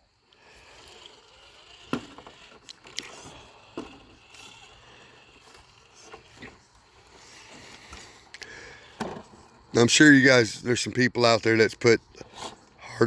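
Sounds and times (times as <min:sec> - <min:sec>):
electric motor and drivetrain running: 0:00.0 - 0:09.9.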